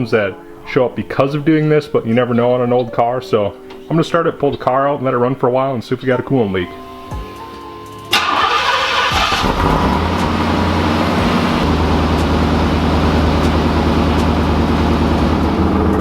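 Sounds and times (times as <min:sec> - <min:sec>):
car engine starting and idling: 0:08.1 - 0:16.0.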